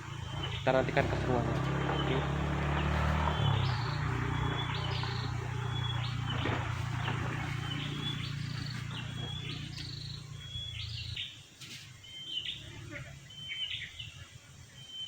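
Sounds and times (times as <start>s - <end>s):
bird whistling call: 3.3s - 6.6s.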